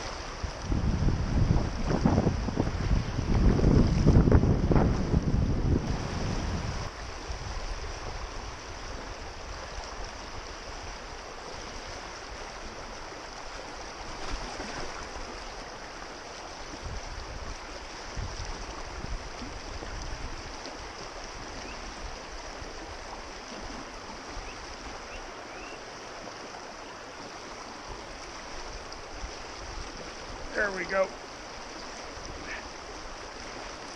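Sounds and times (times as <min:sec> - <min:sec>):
wind buffeting microphone: 0:00.0 - 0:13.2, 0:16.7 - 0:20.6
river water hissing: 0:00.0 - 0:33.9.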